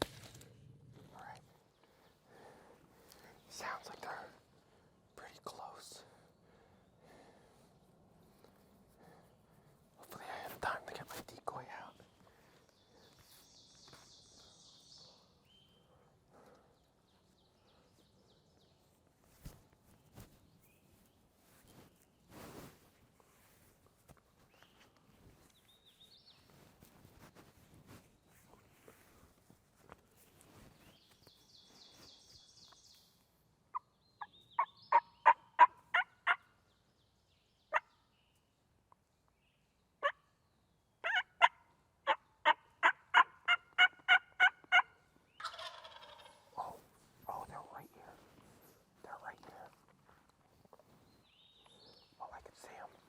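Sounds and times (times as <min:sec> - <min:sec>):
faint songbird trill: 0:10.1 - 0:22.4, 0:24.4 - 0:29.2, 0:30.0 - 0:35.4, 0:50.5 - 0:53.0
faint bird calls: 0:30.3 - 0:36.7, 0:41.0 - 0:49.8
turkey yelps: 0:41.0 - 0:46.7.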